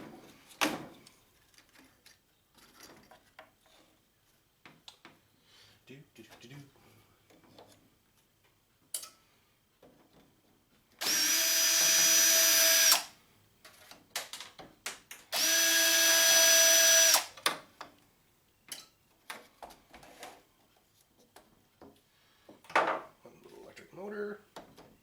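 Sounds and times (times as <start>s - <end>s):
power drill whine: 11.0s - 13.1s, 15.3s - 17.4s.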